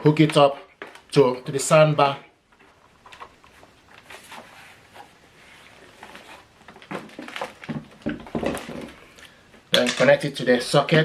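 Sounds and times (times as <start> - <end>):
cable handling rustles and clicks: 0.2 - 1.2, 2.5 - 10.2.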